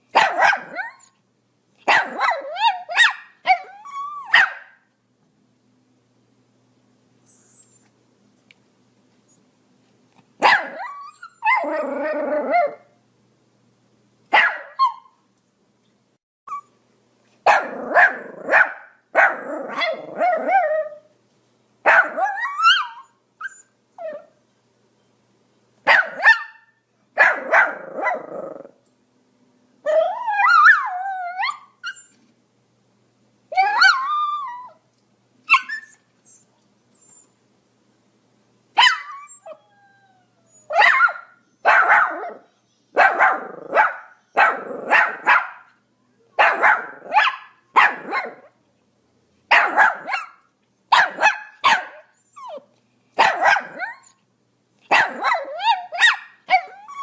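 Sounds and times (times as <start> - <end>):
small dog barking: 0.1 - 1.0, 1.8 - 4.9, 10.4 - 11.8, 14.3 - 15.2, 17.4 - 20.7, 21.8 - 23.0, 25.8 - 28.4, 38.8 - 39.2, 40.7 - 45.8, 46.4 - 48.6, 49.5 - 52.6, 53.2 - 54.0, 54.9 - 56.8
dog wavering howls: 29.9 - 31.7.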